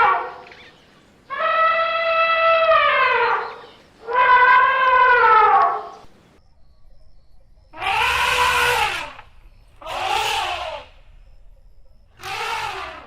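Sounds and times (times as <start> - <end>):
elephant trumpeting: 1.3 - 6.0, 7.8 - 9.2, 9.8 - 11.0, 12.1 - 13.0.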